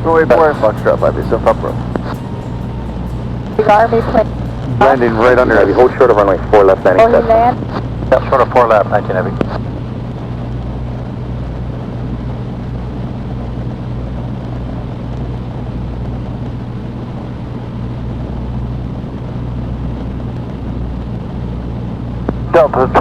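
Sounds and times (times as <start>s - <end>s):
aircraft engine droning: 0.0s - 23.0s.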